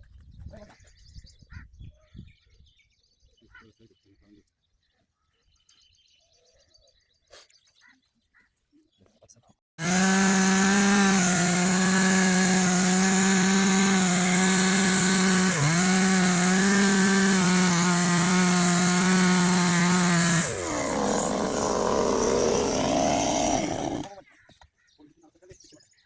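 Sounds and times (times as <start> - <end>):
chainsaw running at high revs: 9.8 - 24.1.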